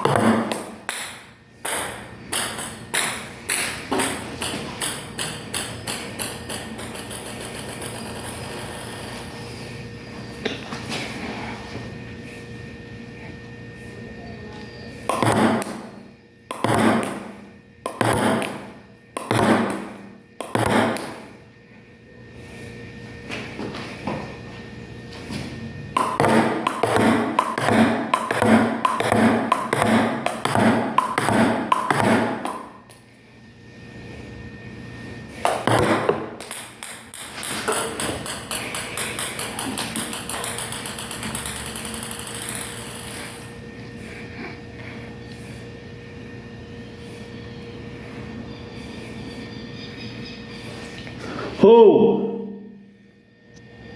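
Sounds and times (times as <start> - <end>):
table tennis ball hits: 0.0 - 8.5, 15.0 - 21.2, 26.0 - 32.8, 35.5 - 43.5.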